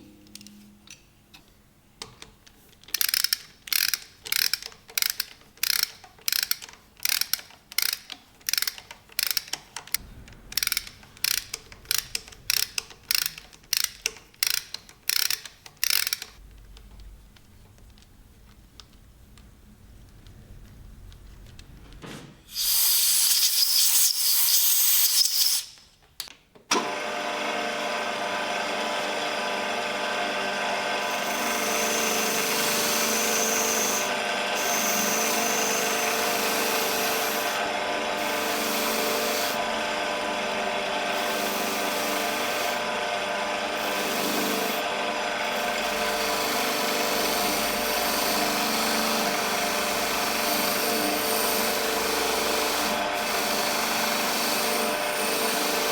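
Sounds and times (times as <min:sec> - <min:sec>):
power tool rubbing on metal: 0:22.5 - 0:25.7, 0:31.0 - 0:39.6, 0:40.6 - 0:42.9, 0:43.7 - 0:55.9
loud hissing burst: 0:22.5 - 0:25.8.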